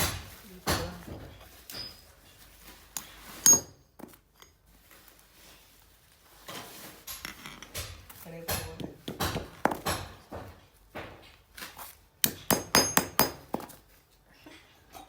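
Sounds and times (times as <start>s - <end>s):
objects knocking and clattering: 0.0s - 4.6s, 6.4s - 11.5s.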